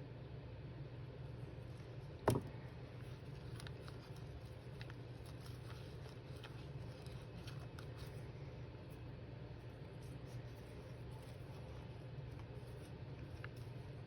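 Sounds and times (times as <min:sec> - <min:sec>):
paper being handled: 0:01.5 - 0:14.0.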